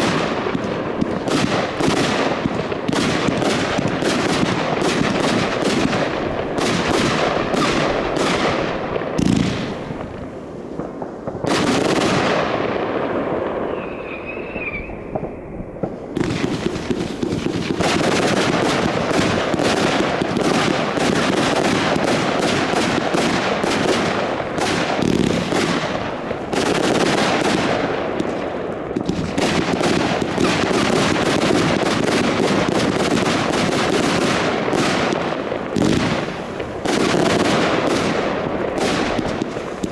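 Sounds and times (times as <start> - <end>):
fireworks crackling bursts: 0.0 - 39.9
wavering firework whistle: 13.2 - 17.2.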